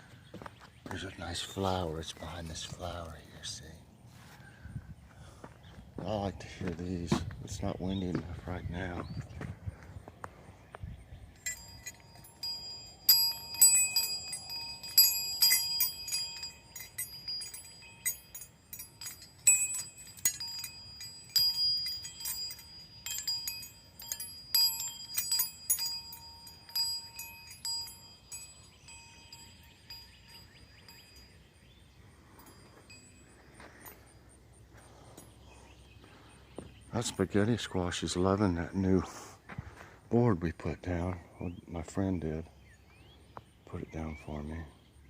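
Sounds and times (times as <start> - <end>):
metal wind chimes ringing: 11.2 - 39.0.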